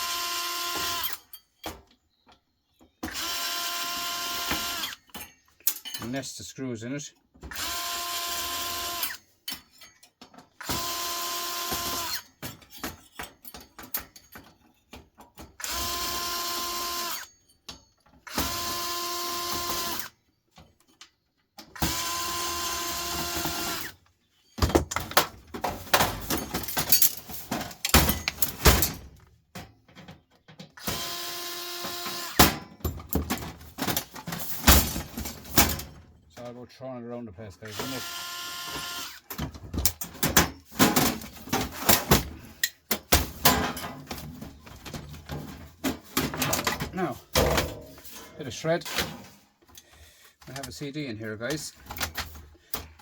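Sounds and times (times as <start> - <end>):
power screwdriver whining: 0.0 - 1.3, 3.0 - 5.2, 7.5 - 9.3, 10.6 - 12.4, 15.6 - 17.3, 18.2 - 20.2, 21.8 - 24.0, 30.8 - 32.6, 37.7 - 39.4
screws and metal parts rattling: 2.8 - 6.4, 7.5 - 18.8, 22.6 - 31.1, 31.8 - 36.0, 38.9 - 53.0
loud clattering and knocking: 43.0 - 48.4.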